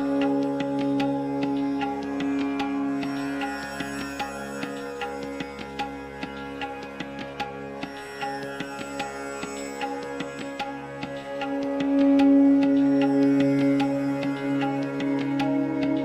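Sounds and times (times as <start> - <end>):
hand drum strokes: 0.0 - 16.0.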